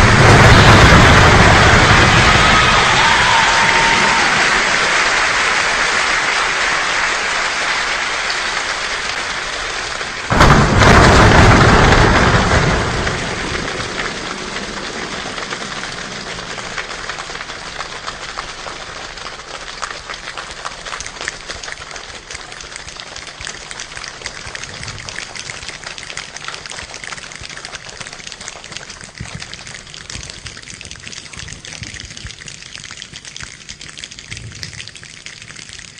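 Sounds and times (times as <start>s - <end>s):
body percussion thunder rumble: 0.0s - 5.3s, 10.0s - 20.6s
body percussion rain hiss: 14.0s - 35.9s.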